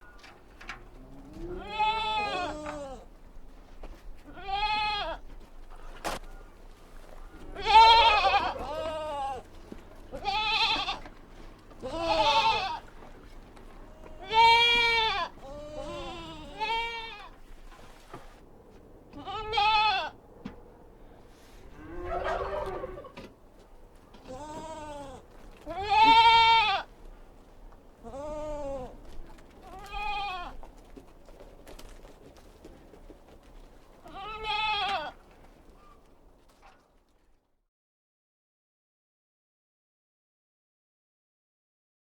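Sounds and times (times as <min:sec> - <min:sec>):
baby goats bleating: 0:01.3 - 0:03.1, 0:04.2 - 0:05.3, 0:07.4 - 0:13.0, 0:13.9 - 0:17.4, 0:19.1 - 0:20.2, 0:24.2 - 0:27.0, 0:28.0 - 0:30.7, 0:34.0 - 0:35.4.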